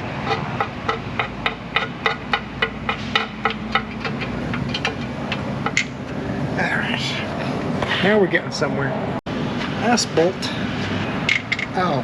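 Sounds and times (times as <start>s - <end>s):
hand ratchet clicking: 0.3s - 5.9s.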